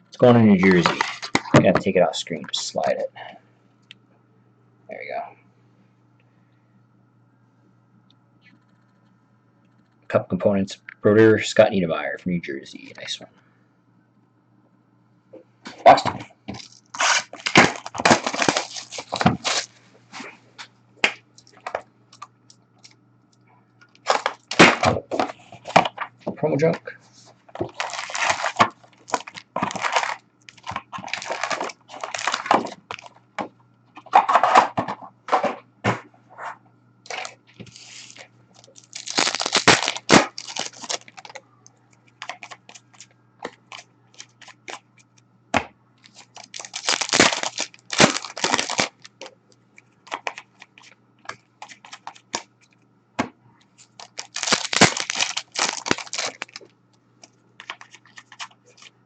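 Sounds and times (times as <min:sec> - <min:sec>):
card pack wrappers tearing: 0:00.2 - 0:01.9, 0:16.5 - 0:19.7, 0:24.0 - 0:25.9, 0:27.6 - 0:33.2, 0:37.1 - 0:41.4, 0:42.2 - 0:44.8, 0:46.0 - 0:49.3, 0:50.0 - 0:51.0, 0:51.6 - 0:52.5, 0:53.8 - 0:56.7, 0:57.6 - 0:58.9.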